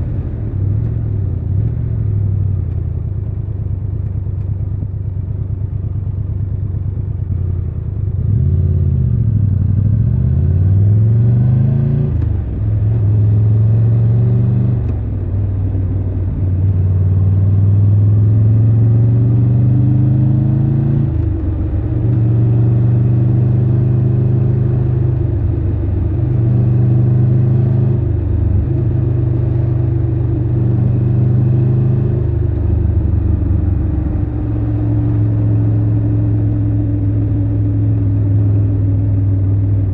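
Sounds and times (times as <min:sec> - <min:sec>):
motorcycle engine running: 0:00.0 - 0:10.6, 0:21.0 - 0:39.9.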